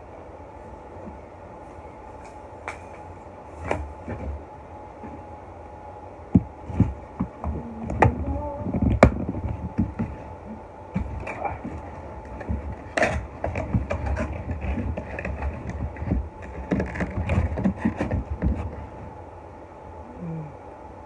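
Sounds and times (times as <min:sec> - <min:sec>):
faint steady hum: 0:00.0 - 0:21.0
objects being handled: 0:00.7 - 0:04.4, 0:06.4 - 0:19.1.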